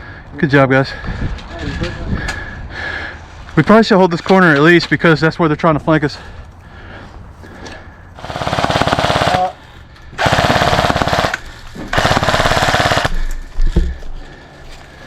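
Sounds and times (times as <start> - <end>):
airsoft rifle full-auto bursts: 8.2 - 9.6, 10.2 - 13.3.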